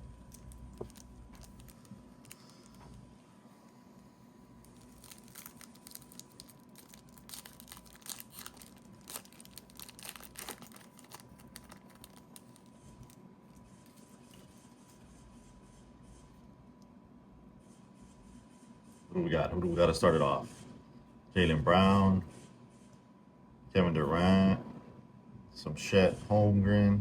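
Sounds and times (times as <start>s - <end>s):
foil wrapper tearing and crinkling: 0.0s - 2.8s, 4.6s - 13.2s.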